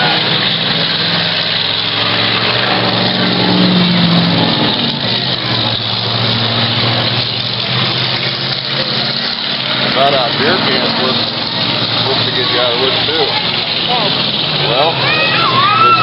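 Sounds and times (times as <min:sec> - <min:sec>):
car engines droning: 0:00.0 - 0:16.0
dense wash of noise: 0:00.0 - 0:16.0.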